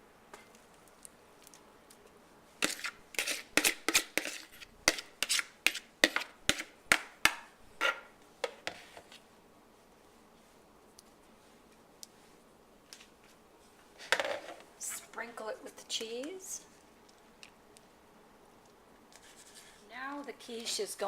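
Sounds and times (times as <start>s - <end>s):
spoon scraping a mixing bowl: 2.6s - 6.7s.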